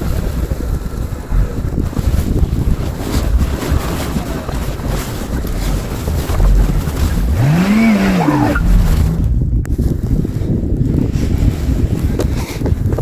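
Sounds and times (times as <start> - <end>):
wind rumble on microphone: 0.0 - 13.0
tires spinning in snow: 0.2 - 12.7
car engine revving: 5.4 - 9.7.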